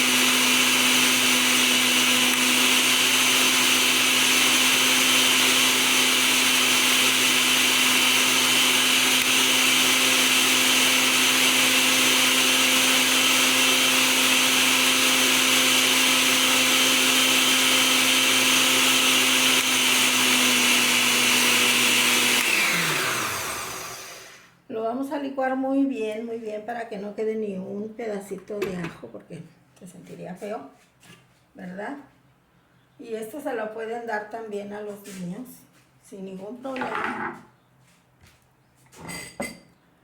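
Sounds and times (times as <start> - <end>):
blender running: 0.0 - 24.5.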